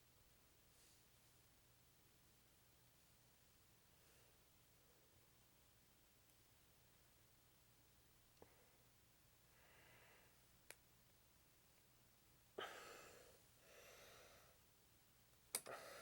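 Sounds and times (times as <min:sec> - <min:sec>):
soft breaths near microphone: 0:00.6 - 0:01.5, 0:03.0 - 0:05.4, 0:08.3 - 0:10.6, 0:12.5 - 0:14.8, 0:15.6 - 0:16.0.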